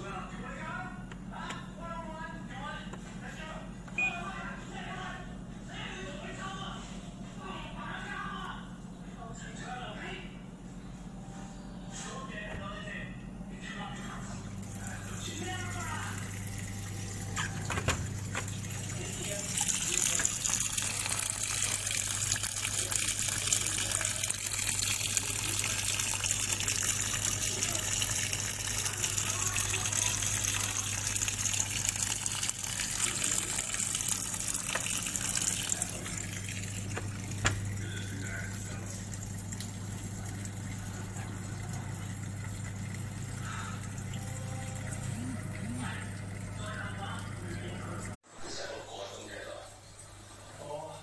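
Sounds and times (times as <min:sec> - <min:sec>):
washing machine water rushing: 0:14.0 - 0:48.2, 0:49.1 - 0:51.0.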